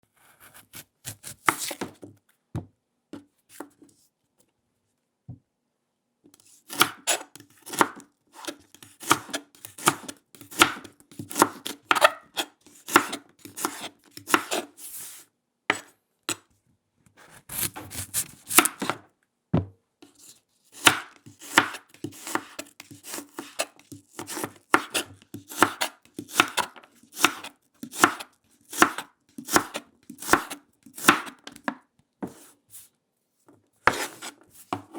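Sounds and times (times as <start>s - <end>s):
knife chopping on wooden board: 0.4s - 2.7s, 6.7s - 14.7s, 15.7s - 15.9s, 17.2s - 19.0s, 20.8s - 32.5s, 33.8s - 34.9s.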